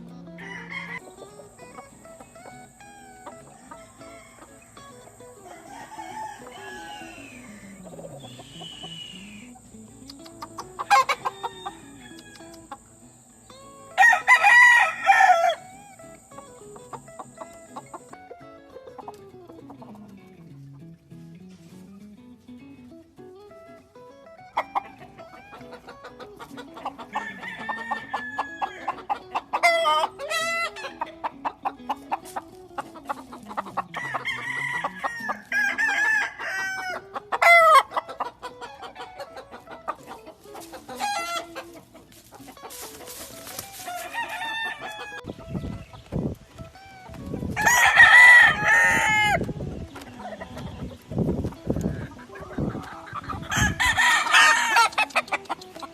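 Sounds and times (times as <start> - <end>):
roosters crowing: 0.0 - 20.1, 24.4 - 55.9
clucking: 0.0 - 22.1, 23.6 - 55.9.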